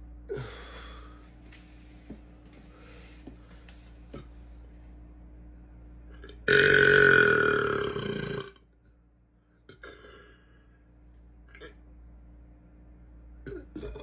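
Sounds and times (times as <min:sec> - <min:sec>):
man belching: 0:06.5 - 0:08.6, 0:13.5 - 0:14.0.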